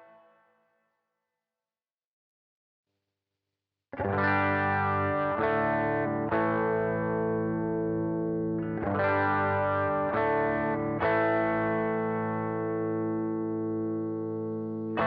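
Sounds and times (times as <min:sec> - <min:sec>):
distorted electric guitar chords: 0:04.0 - 0:15.0.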